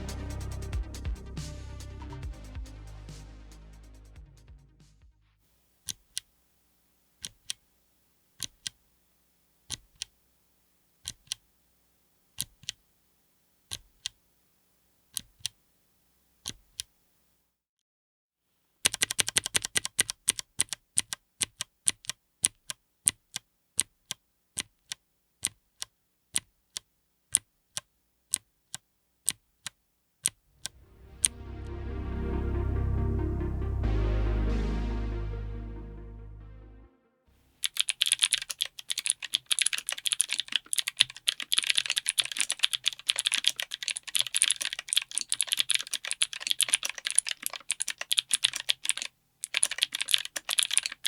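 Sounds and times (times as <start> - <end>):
mechanical keyboard keys clicking: 18.9 - 30.4, 37.6 - 51.0.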